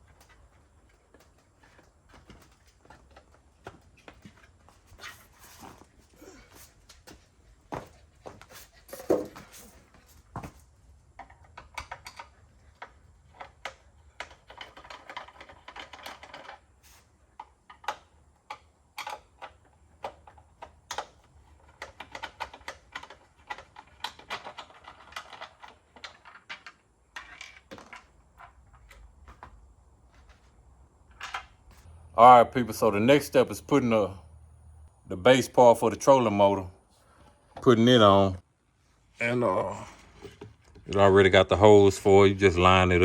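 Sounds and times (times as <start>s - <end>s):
tools clicking on plastic parts: 17.4s - 28.5s.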